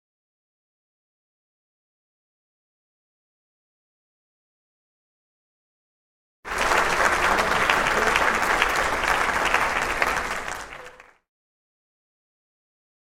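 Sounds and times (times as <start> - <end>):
crowd applauding: 6.5 - 11.2.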